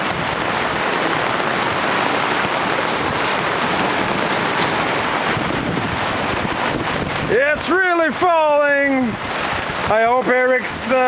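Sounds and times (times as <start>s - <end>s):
heavy rain pouring: 0.0s - 11.0s.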